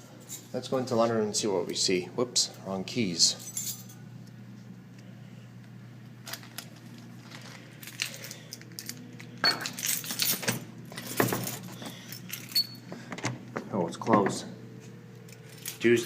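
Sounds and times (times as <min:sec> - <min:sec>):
steady low hum: 0:00.0 - 0:16.0
keys jangling: 0:03.3 - 0:04.0, 0:07.3 - 0:12.8, 0:15.2 - 0:15.9.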